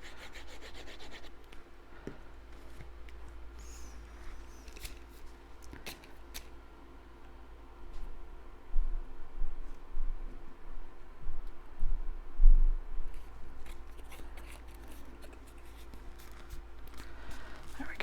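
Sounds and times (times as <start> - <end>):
paper scraping and rustling: 13.6 - 17.9.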